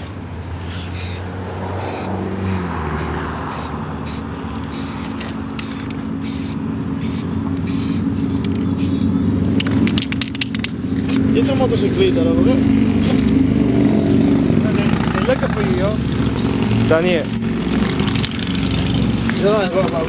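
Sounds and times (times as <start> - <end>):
vehicle engine running: 0.0 - 20.0
short hissing bursts: 0.8 - 8.0, 11.7 - 15.2, 15.8 - 16.4, 17.0 - 17.4, 19.2 - 19.6.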